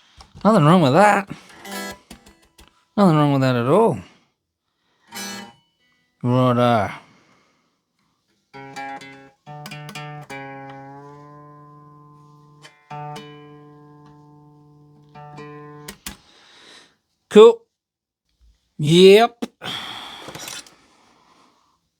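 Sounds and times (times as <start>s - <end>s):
electric guitar playing: 8.6s - 16.2s.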